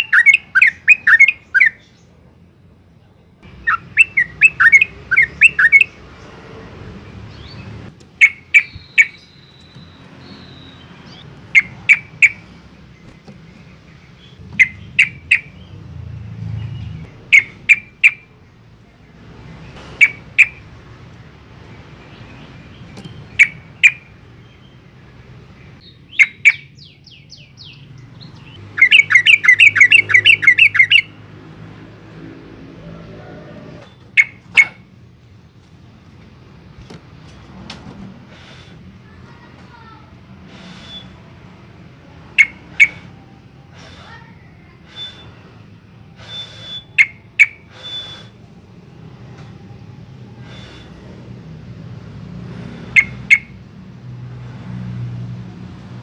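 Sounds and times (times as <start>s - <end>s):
bird chattering: 0.0s - 2.0s, 3.5s - 6.0s, 8.1s - 15.8s, 17.0s - 18.4s, 19.9s - 20.7s, 22.8s - 24.8s, 25.6s - 31.2s, 33.8s - 35.0s, 42.1s - 45.4s, 46.1s - 48.4s, 52.5s - 53.6s
bird calling sharply: 33.8s - 34.9s, 42.4s - 43.2s, 46.2s - 48.4s, 52.7s - 53.6s.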